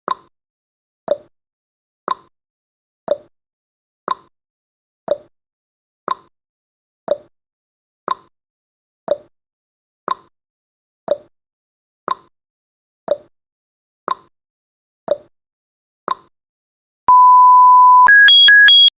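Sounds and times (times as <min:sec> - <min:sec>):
fast alternating electronic alarm: 0:17.1 - 0:18.9
steady beep: 0:17.1 - 0:18.9
timer ticking: 0:18.0 - 0:18.9.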